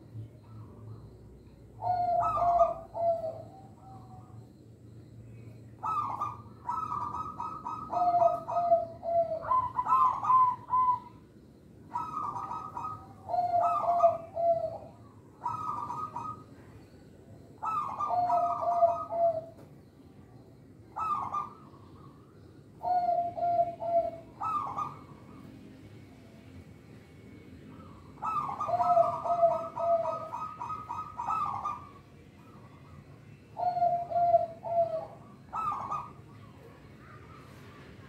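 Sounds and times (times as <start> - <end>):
dove cooing: 1.8 - 4.4, 5.8 - 11.2, 11.8 - 16.8, 17.4 - 19.7, 20.9 - 22.2, 22.8 - 25.6, 27.7 - 38.0.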